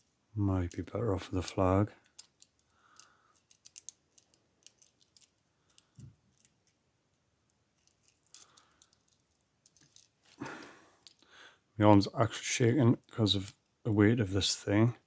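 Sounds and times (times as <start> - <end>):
lock pick clicks and scrapes: 1.4 - 6.8.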